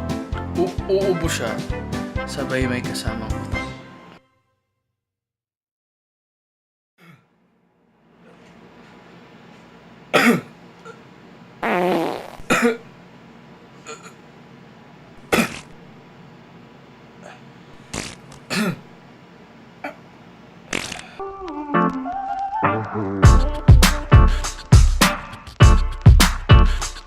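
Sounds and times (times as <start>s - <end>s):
person coughing: 7.0s - 7.3s, 10.1s - 11.0s, 12.4s - 12.9s, 13.8s - 14.2s, 15.3s - 15.7s, 18.5s - 18.9s
fart noises: 11.6s - 12.8s, 15.3s - 15.8s, 17.8s - 18.5s, 20.7s - 21.2s.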